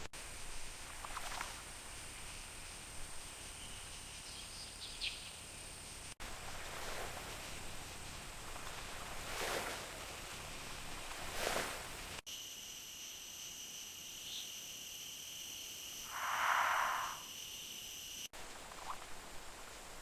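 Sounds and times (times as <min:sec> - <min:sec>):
high-pitched insect drone: 0:12.3 - 0:18.3
short animal call: 0:16.1 - 0:17.3.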